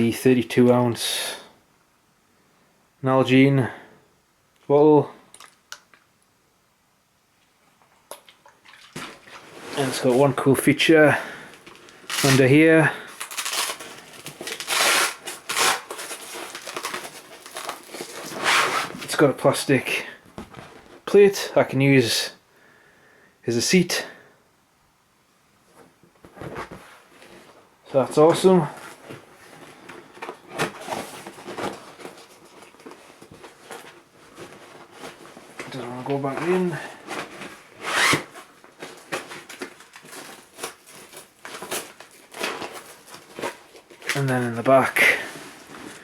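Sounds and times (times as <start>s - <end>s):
rucksack fabric rustling: 8.7s - 19.3s, 25.6s - 46.0s.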